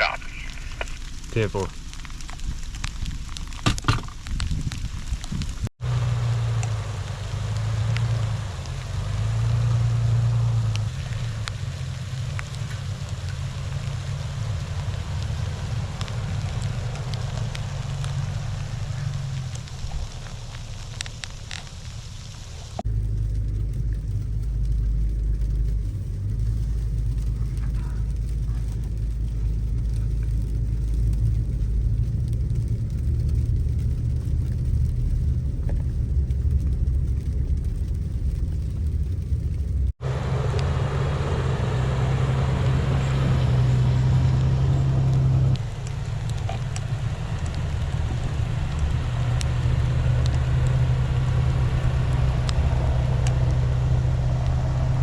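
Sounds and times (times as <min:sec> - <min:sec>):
vehicle engine drone: 0:00.0 - 0:55.0
hiss: 0:05.9 - 0:22.8.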